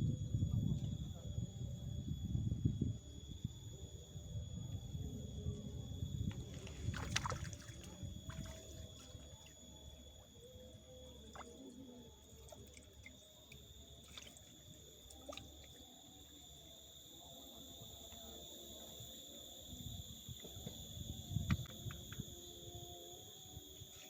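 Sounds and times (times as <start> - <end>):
insects singing: 5.8 - 24.0.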